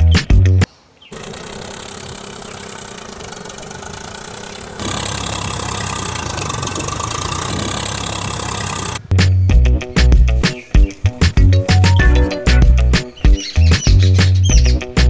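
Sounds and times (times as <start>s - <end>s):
water pump motor humming: 1.1s - 9.1s.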